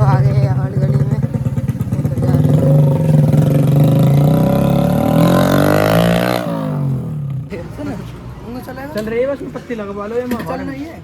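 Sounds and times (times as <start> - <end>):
motorcycle engine revving: 0.0 - 7.5.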